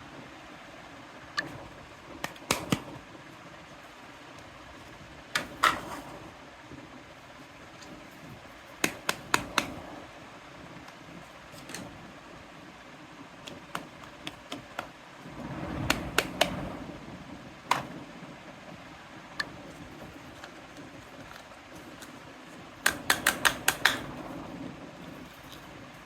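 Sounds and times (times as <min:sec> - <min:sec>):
plastic toy pieces tapping: 0:22.8 - 0:24.0.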